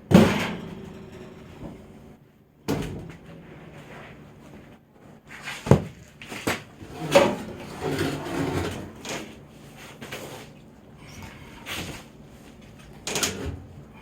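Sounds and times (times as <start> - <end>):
wood scraping: 6.8 - 10.5.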